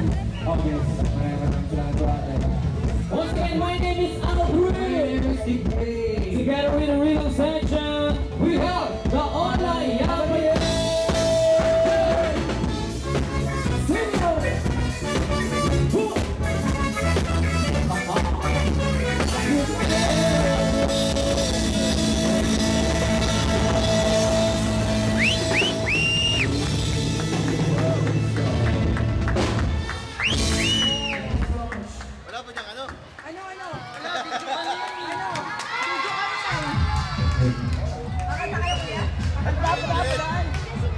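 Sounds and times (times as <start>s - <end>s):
rock music with drums: 0.0s - 31.8s.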